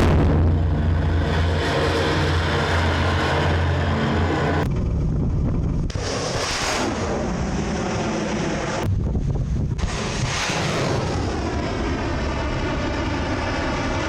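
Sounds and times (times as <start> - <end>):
launch blast: 0.0 - 14.0
strong low hum: 0.0 - 14.0
missile launch rumble and hiss: 5.4 - 14.0.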